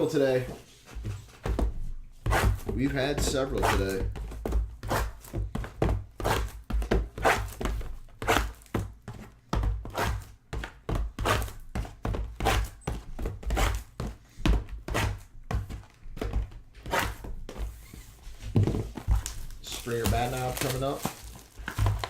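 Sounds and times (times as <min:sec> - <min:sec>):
card boxes knocking on table: 0:18.5 - 0:22.0.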